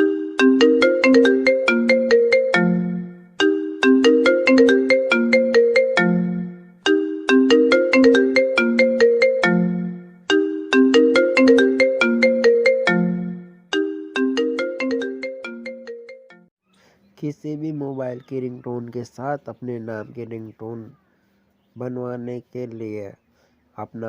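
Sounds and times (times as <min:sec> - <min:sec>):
phone ringtone melody: 0:00.0 - 0:16.5.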